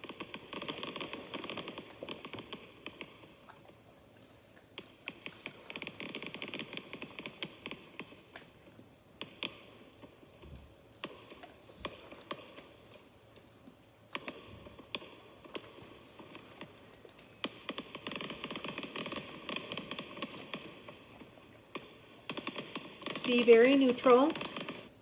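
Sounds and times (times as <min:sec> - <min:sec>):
firework pops and crackles: 0:00.0 - 0:03.8, 0:04.6 - 0:13.4, 0:14.1 - 0:25.0
fizzing crackle: 0:00.0 - 0:25.0.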